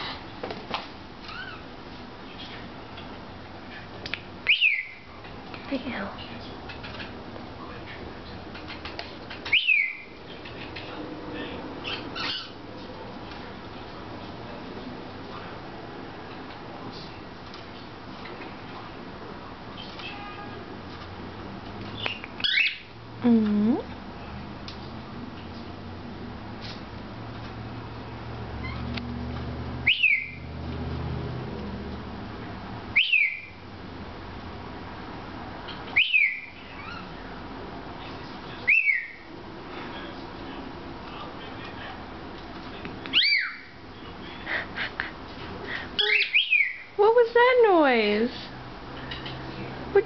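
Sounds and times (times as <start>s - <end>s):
faint room noise: 0.0s - 50.0s
cockatiel whistled calls: 4.5s - 5.0s, 9.4s - 10.2s, 22.0s - 22.9s, 29.8s - 30.4s, 33.0s - 33.5s, 35.9s - 37.1s, 38.6s - 39.2s, 43.1s - 43.7s, 46.0s - 46.9s
cockatiel rough calls: 46.0s - 46.9s.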